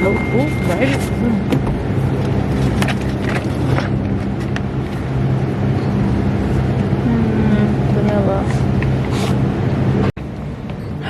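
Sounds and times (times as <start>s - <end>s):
shopping cart rattling: 0.0s - 1.4s, 2.0s - 5.1s
shopping cart wheels rumbling: 0.0s - 8.8s
low hum: 0.0s - 11.0s.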